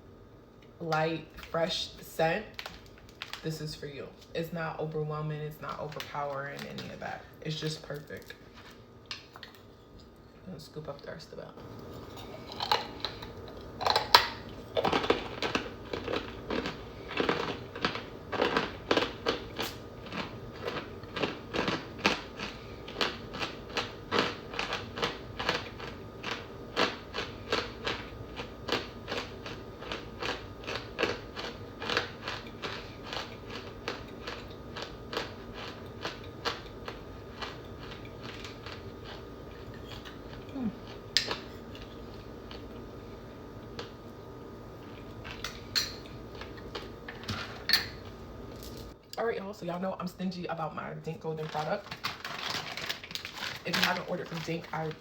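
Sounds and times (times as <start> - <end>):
cornstarch crunching: 13.9 - 39.2.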